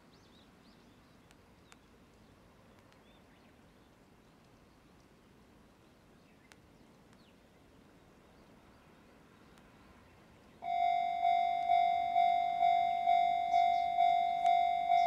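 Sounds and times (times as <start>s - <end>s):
level crossing warning bell: 10.6s - 15.0s.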